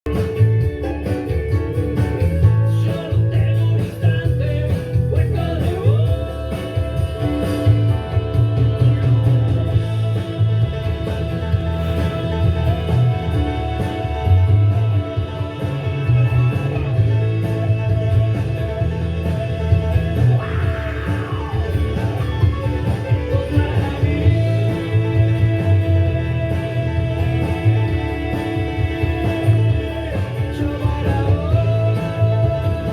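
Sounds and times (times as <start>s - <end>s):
guitar with bending notes: 0.0s - 32.9s
steady bass line: 0.0s - 32.9s
person singing: 2.4s - 32.9s.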